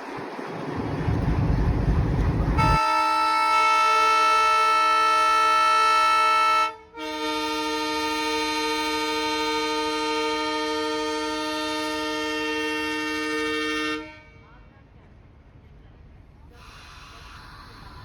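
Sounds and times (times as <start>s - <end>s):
loud low rumble: 0.8s - 2.8s
locomotive air horn: 2.6s - 14.5s.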